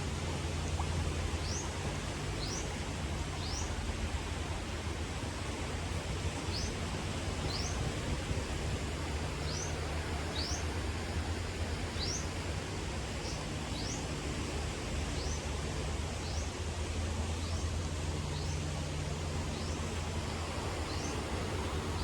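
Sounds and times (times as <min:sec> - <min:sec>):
water rushing: 0:00.0 - 0:22.0
wind: 0:00.0 - 0:22.0
wind buffeting microphone: 0:05.6 - 0:13.9.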